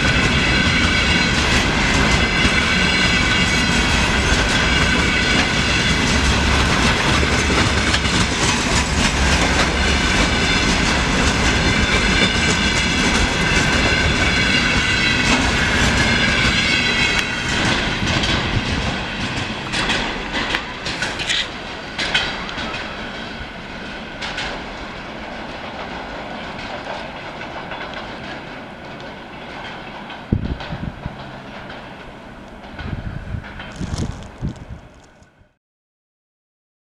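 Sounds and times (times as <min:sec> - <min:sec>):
train wheels clacking on rail joints: 0:00.0 - 0:35.4.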